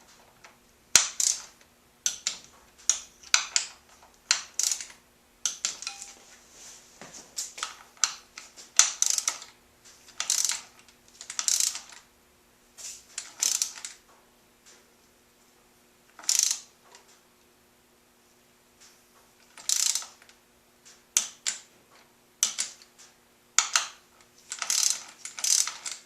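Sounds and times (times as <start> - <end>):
socket ratchet clicking: 1.0 - 6.2, 7.6 - 12.0, 13.2 - 14.0, 16.2 - 16.7, 19.5 - 20.2, 21.2 - 21.7, 22.4 - 22.9, 23.6 - 26.0
metallic clicks and clinks: 2.1 - 6.2.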